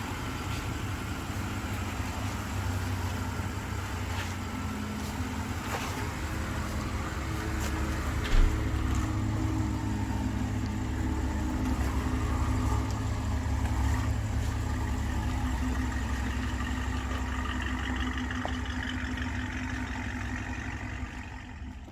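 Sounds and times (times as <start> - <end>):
car engine humming: 0.0 - 21.9.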